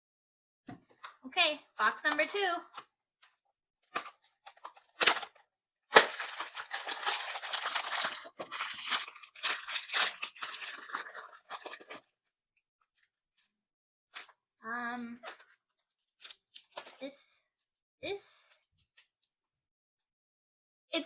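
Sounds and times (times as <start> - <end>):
packaging tearing and crinkling: 4.0 - 12.1
packaging clicks: 5.9 - 11.9.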